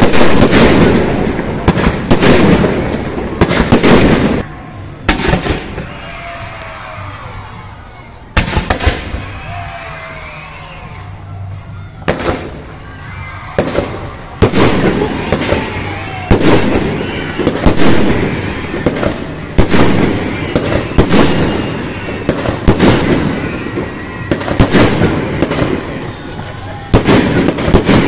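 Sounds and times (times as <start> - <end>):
firework crackling: 0.0 - 28.0.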